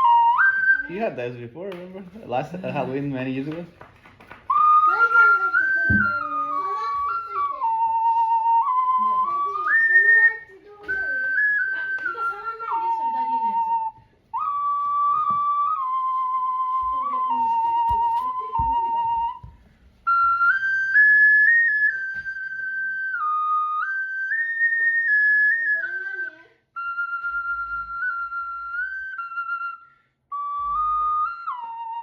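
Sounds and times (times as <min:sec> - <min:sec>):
ocarina playing slow melody: 0:04.6 - 0:19.5, 0:26.8 - 0:32.0.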